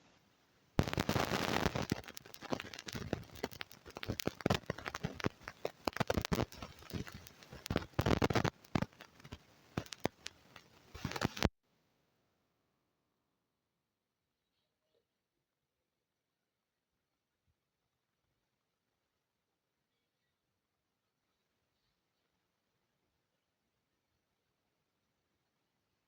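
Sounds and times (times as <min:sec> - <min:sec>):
crunching of chewing food: 0:00.8 - 0:11.4.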